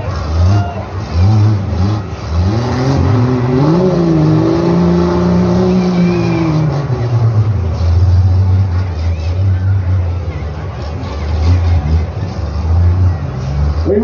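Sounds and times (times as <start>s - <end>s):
car engine revving hard: 0.0s - 9.1s.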